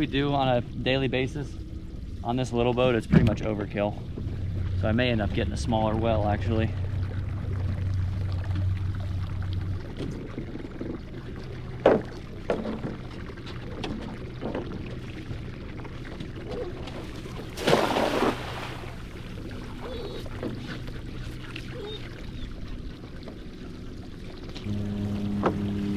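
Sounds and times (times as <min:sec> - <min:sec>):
short rush of water: 0:17.0 - 0:19.2.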